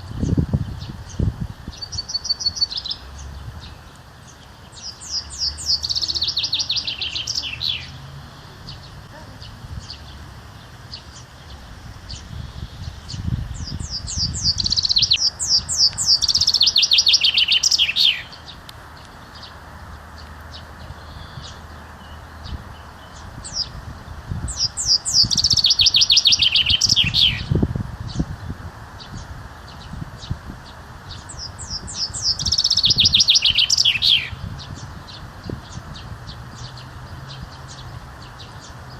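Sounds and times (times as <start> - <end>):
songbird singing: 0.0 - 38.9.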